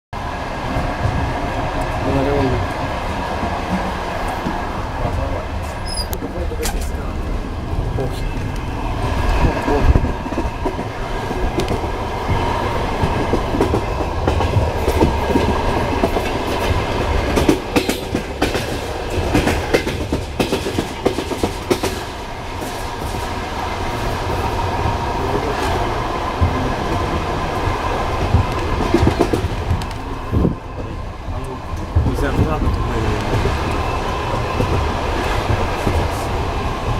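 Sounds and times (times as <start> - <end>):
train wheels clacking over joints: 8.0 - 23.4, 26.4 - 36.3.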